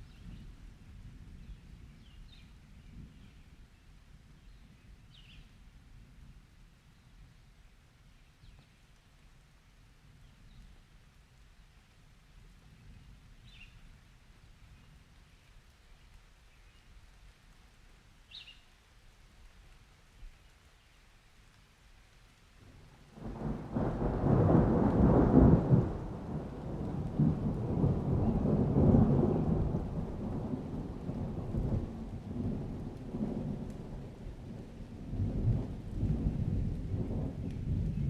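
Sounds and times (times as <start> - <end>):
rain: 0.0 - 38.0
deep thunder rumble: 23.1 - 38.0.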